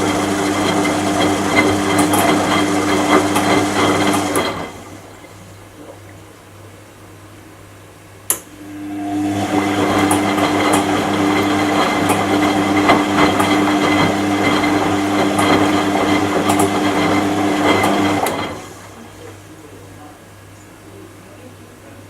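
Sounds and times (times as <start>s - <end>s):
washing machine whirring: 0.0s - 22.0s
washing machine click: 9.8s - 18.8s.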